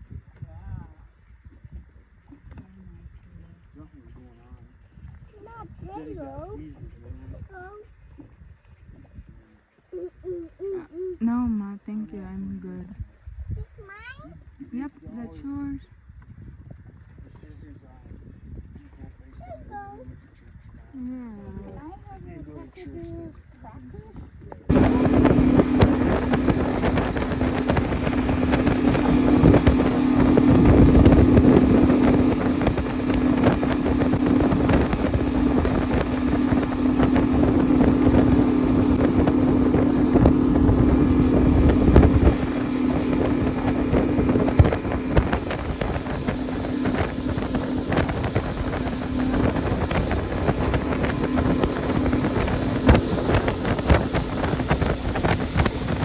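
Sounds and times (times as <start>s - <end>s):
wind buffeting microphone: 16.0s - 22.4s, 23.9s - 56.0s
motorboat engine humming: 24.7s - 56.0s.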